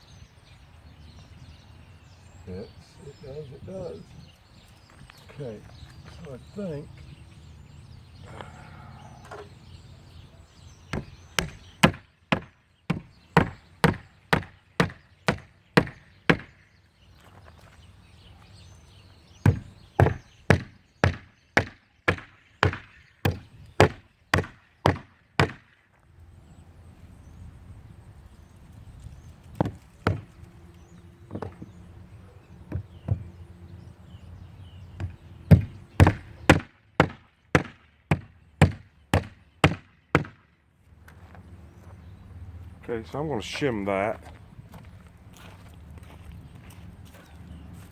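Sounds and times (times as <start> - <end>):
hammer strikes: 10.9 - 16.5, 19.5 - 25.6.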